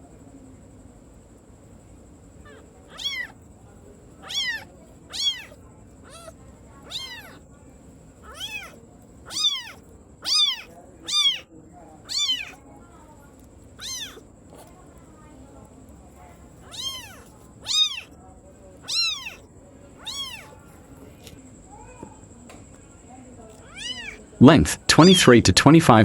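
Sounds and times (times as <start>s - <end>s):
kitten mewing: 2.4s - 3.4s, 4.2s - 7.4s, 8.2s - 12.6s, 13.8s - 14.7s, 16.6s - 18.2s, 18.8s - 19.4s, 20.0s - 20.7s, 23.6s - 25.3s.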